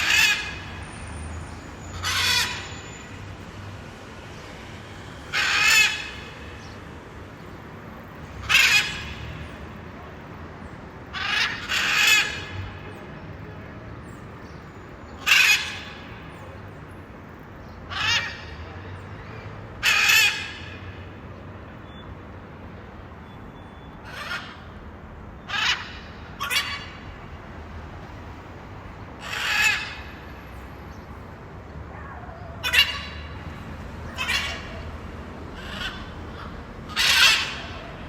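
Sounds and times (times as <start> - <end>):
macaws squawking: 0.0 - 0.8, 2.0 - 2.8, 5.3 - 6.3, 8.4 - 9.3, 11.1 - 12.6, 15.2 - 16.1, 19.8 - 20.9, 25.5 - 27.0, 29.2 - 30.1, 32.0 - 38.0.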